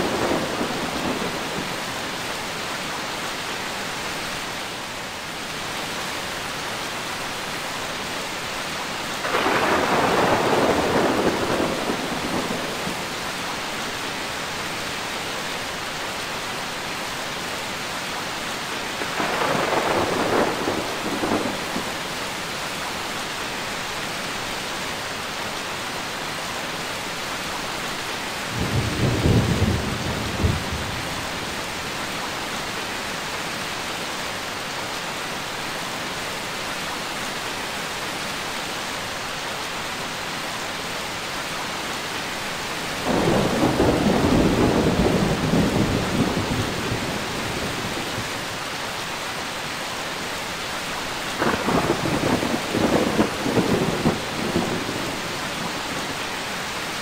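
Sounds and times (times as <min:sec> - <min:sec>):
thunder rolling: 0:00.0 - 0:01.8, 0:09.2 - 0:13.1, 0:19.0 - 0:22.0, 0:43.0 - 0:47.9, 0:51.4 - 0:55.8
steady rain: 0:00.0 - 0:57.0.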